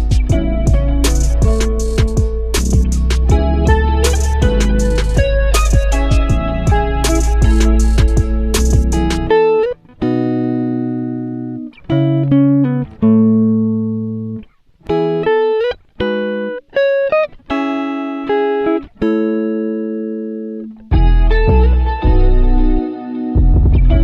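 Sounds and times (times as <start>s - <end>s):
guitar playing slow chords: 0.0s - 24.0s.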